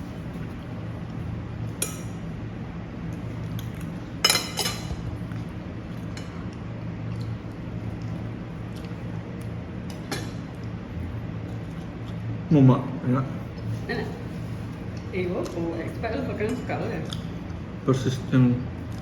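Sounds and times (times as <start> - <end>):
cutlery clinking against dishes: 4.2 - 5.0.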